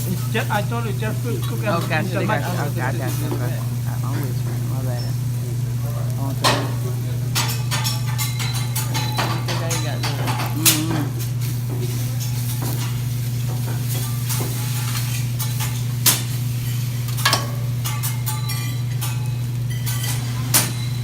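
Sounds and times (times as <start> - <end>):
steady low hum: 0.0 - 14.1
food sizzling on griddle: 0.0 - 21.0.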